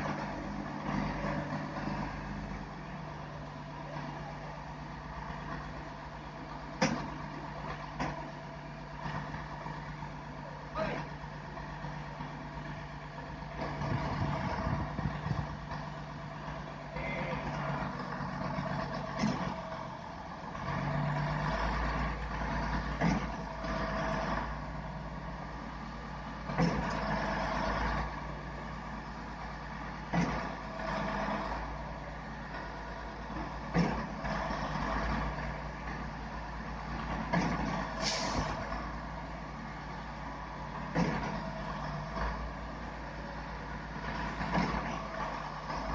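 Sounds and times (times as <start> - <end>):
diesel engine droning: 0.0 - 45.9
short hiss: 38.0 - 38.5.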